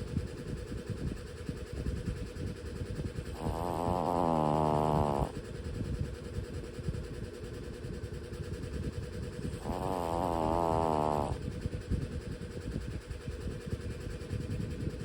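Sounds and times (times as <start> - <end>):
dog snoring: 3.3 - 5.4, 9.5 - 11.4.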